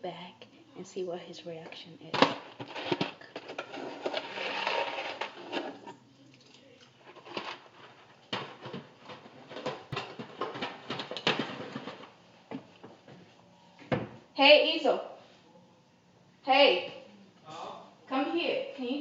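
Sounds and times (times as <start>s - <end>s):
rustling: 2.4s - 6.0s.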